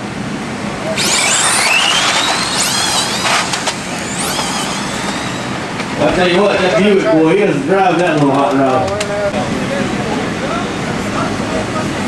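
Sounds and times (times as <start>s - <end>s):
electric motors whining rising: 0.8s - 6.5s.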